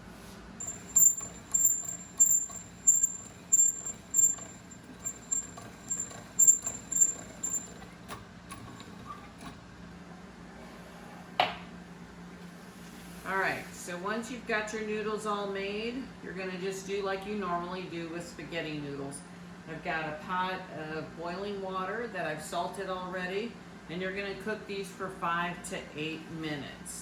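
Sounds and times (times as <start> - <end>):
pasta machine squeaking: 0.6 - 9.5.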